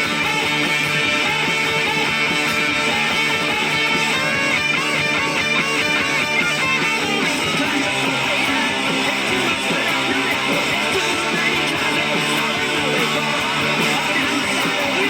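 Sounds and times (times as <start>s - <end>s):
punk rock electric guitar: 0.0s - 15.0s.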